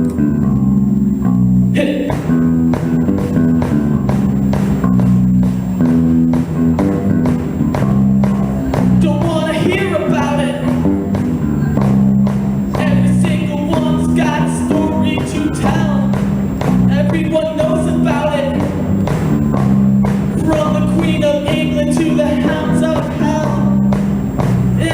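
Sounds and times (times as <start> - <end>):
guitar and bass chords: 0.0 - 24.9
drum beat: 1.7 - 24.9
lead vocal singing: 1.8 - 2.4, 9.0 - 10.9, 12.8 - 16.3, 16.9 - 18.8, 20.3 - 23.9.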